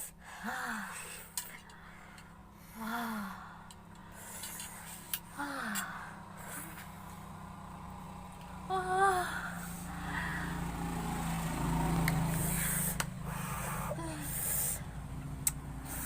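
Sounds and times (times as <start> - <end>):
person gasping: 0.0 - 6.9, 8.7 - 10.6, 12.4 - 14.9.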